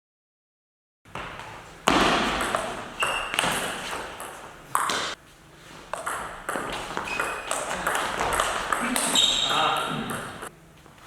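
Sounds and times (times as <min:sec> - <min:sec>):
table tennis ball hits: 0:01.1 - 0:05.2, 0:05.9 - 0:10.5.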